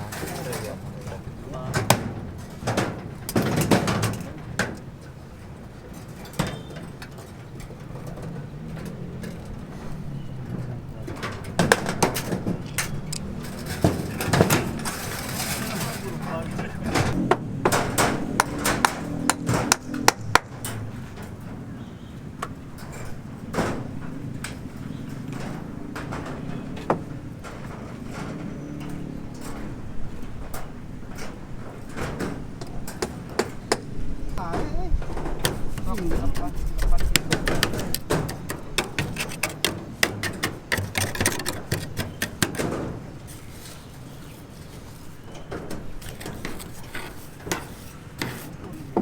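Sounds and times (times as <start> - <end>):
sharp knocks: 11.0 - 21.6, 30.5 - 43.2.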